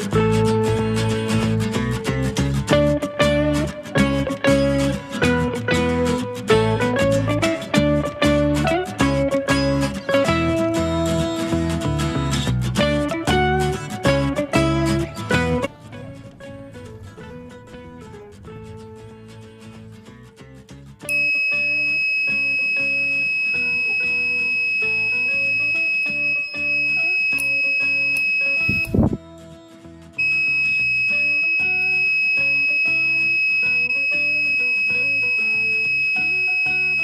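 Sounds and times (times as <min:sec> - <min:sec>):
guitar background music: 0:00.0 - 0:37.0
high-pitched alarm buzzer: 0:21.1 - 0:29.1, 0:30.2 - 0:37.0.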